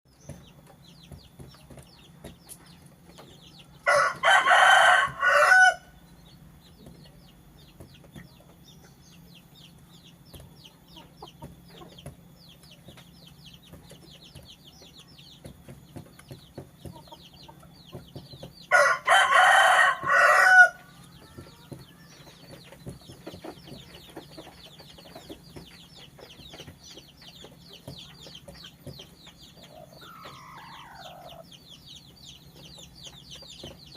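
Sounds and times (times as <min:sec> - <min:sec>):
steady low hum: 0:00.1 - 0:33.9
rooster crowing: 0:03.8 - 0:06.0, 0:18.7 - 0:21.8, 0:30.0 - 0:31.4
rapid high-pitched chirping: 0:20.9 - 0:33.9.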